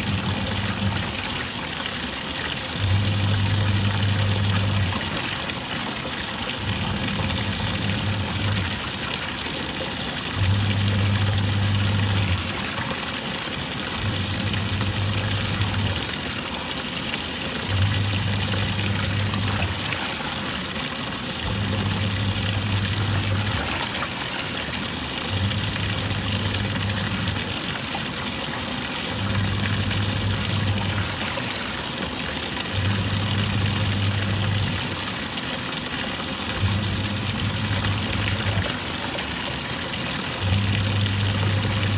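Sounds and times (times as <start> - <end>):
washing machine motor humming: 0.0 - 41.9
water sloshing: 10.3 - 34.7.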